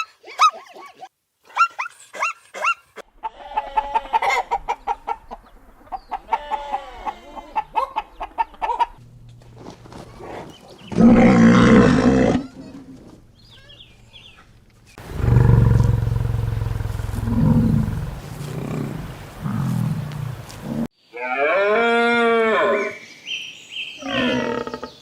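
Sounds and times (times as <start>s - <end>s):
animal grunting calls: 10.1s - 12.8s, 15.0s - 20.9s
animal roaring: 10.9s - 12.5s, 15.0s - 20.9s
cow mooing: 15.0s - 22.7s.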